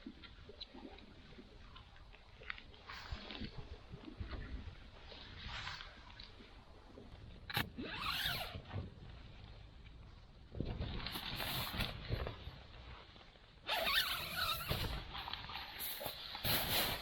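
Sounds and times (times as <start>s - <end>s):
zip being worked: 7.6s - 8.6s, 13.7s - 17.0s.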